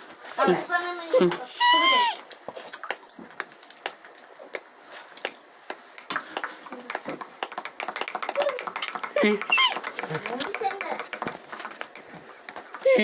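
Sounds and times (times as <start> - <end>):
faint voices: 0.4 - 2.2.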